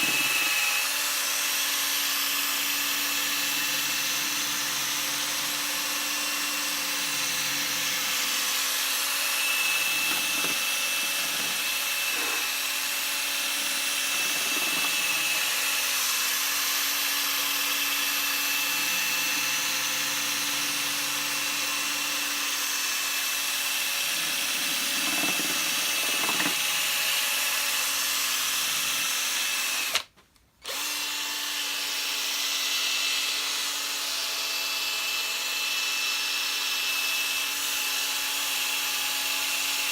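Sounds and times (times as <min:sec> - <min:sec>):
electric polisher whining: 0:00.0 - 0:27.7, 0:30.7 - 0:34.2.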